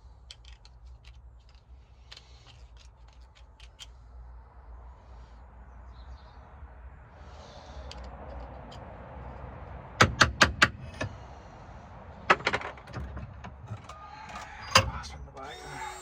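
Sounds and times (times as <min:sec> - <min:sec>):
small metal parts clinking: 0:00.1 - 0:04.0.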